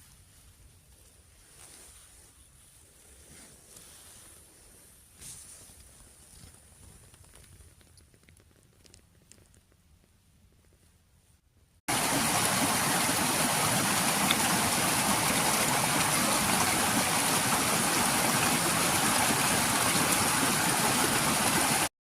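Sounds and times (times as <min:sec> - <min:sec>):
steady rushing noise: 0:11.9 - 0:21.9.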